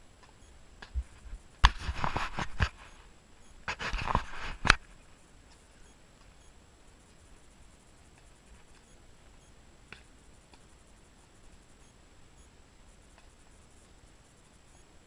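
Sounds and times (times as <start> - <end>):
faint clicks: 7.0 - 12.5.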